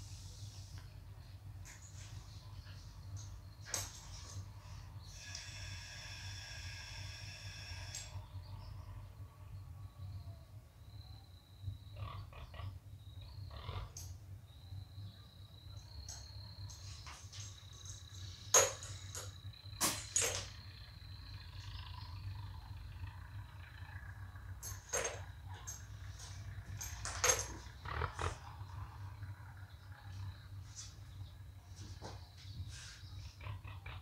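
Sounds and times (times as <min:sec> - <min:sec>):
air compressor rumbling: 0:00.0 - 0:09.1.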